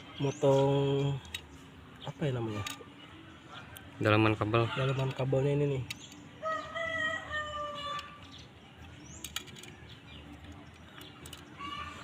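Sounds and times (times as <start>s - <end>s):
low background noise: 0.0s - 12.0s
rooster crowing: 6.4s - 8.2s.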